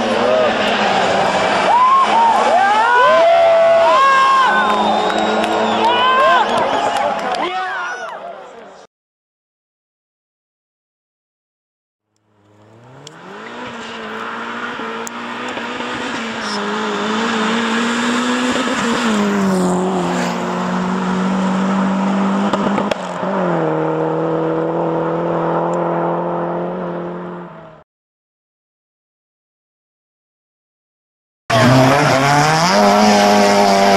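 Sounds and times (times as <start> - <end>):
car engine revving: 0.0 - 6.6, 12.2 - 27.8, 31.5 - 33.9.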